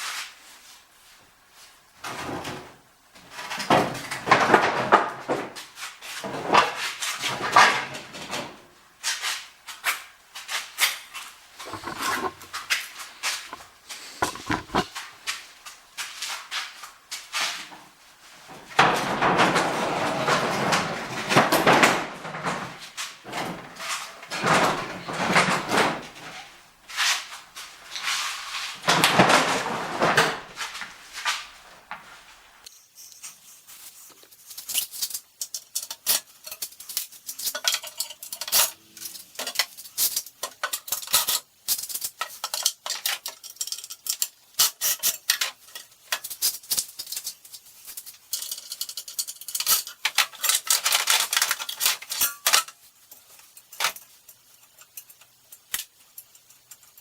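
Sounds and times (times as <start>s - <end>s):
steel parts scraping and clattering: 11.6s - 15.0s, 32.8s - 57.0s
light metallic clinks and rattles: 51.5s - 57.0s.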